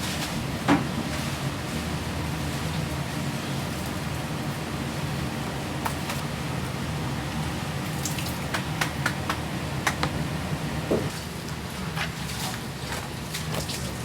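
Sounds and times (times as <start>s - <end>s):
low mechanical hum: 0.0s - 14.0s
food preparation clicks and knocks: 8.2s - 10.3s.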